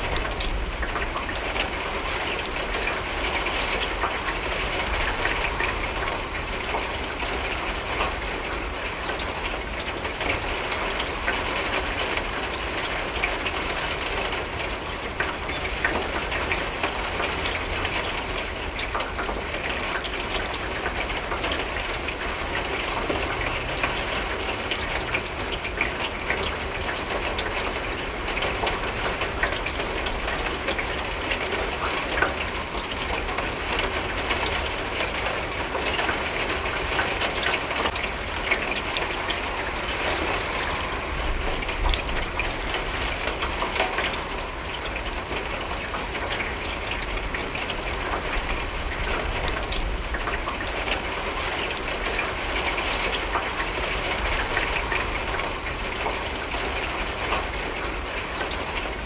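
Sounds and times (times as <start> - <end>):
rain on a window: 0.0 - 59.0.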